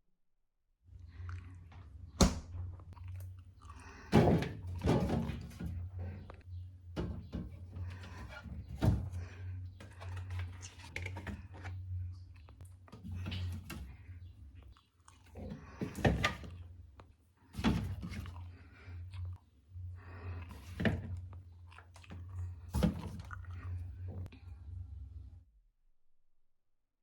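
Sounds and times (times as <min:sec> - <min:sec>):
fridge hum: 0:01.1 - 0:25.3
containers knocking and clattering: 0:04.0 - 0:11.7.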